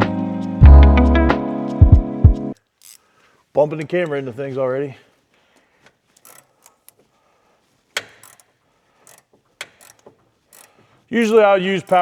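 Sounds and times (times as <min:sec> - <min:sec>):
ratchet wrench clicking: 0:02.8 - 0:03.1, 0:06.1 - 0:07.0, 0:08.0 - 0:12.0.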